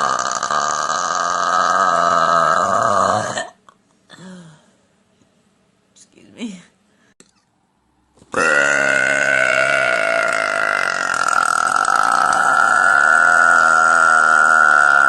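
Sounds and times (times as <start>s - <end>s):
woman burping: 0.0s - 4.5s, 8.3s - 15.0s.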